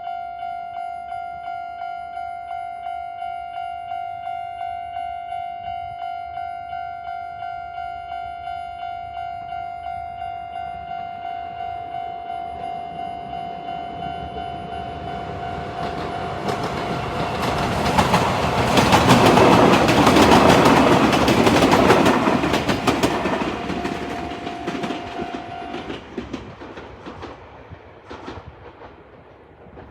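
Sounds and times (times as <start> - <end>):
train wheels clattering: 13.9 - 29.9.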